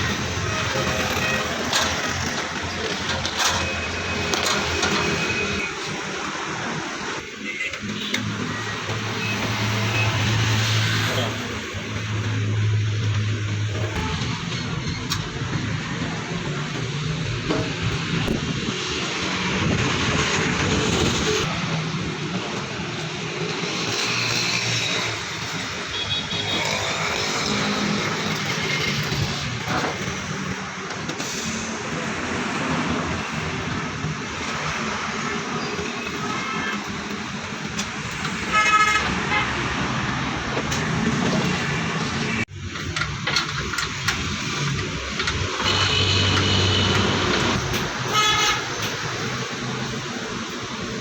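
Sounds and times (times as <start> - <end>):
noisy background: 0.0 - 51.0
road traffic: 0.0 - 51.0
vehicle horns honking: 38.4 - 39.6, 45.6 - 48.9.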